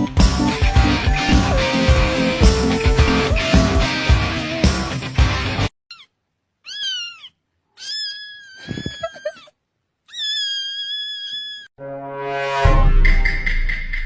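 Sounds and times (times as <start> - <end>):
music: 0.0 - 5.7, 11.8 - 14.0
cat meowing: 5.9 - 9.5, 10.1 - 11.7.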